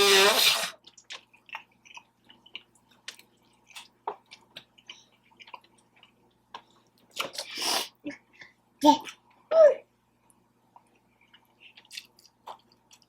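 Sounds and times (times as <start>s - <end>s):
wet chewing and lip smacks: 0.8s - 7.5s, 10.3s - 13.0s.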